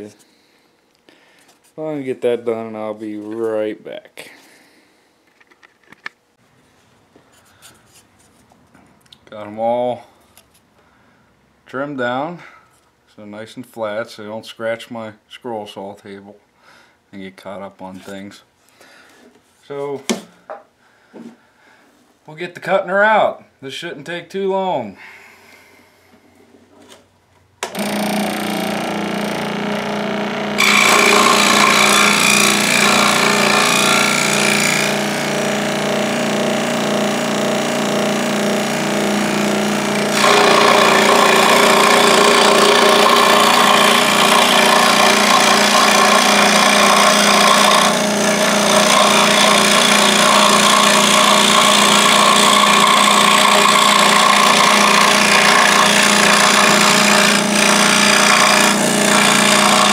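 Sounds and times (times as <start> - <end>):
motor hum: 27.6 - 59.9
scroll saw cutting wood: 27.7 - 59.9.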